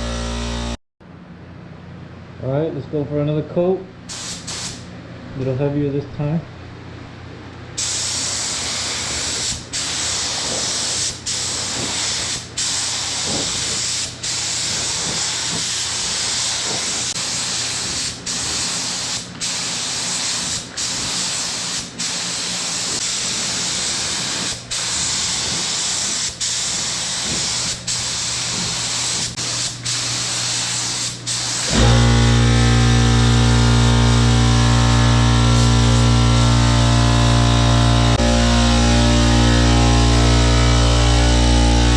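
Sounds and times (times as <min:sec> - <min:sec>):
paint spray gun hissing: 0:04.1 - 0:04.8, 0:07.8 - 0:36.9.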